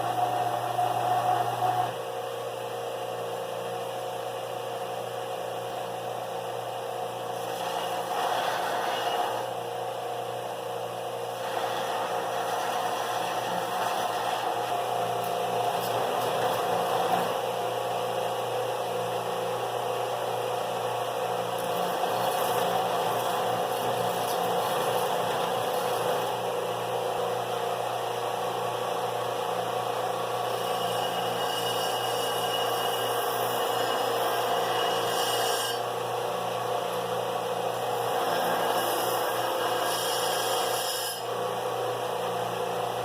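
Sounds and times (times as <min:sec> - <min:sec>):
electric power tool running: 0:00.0 - 0:02.0, 0:11.3 - 0:17.8, 0:21.4 - 0:26.6
small electric motor humming: 0:00.0 - 0:02.0, 0:07.3 - 0:09.8, 0:11.3 - 0:19.3, 0:21.4 - 0:26.6, 0:30.2 - 0:36.6, 0:37.7 - 0:41.4.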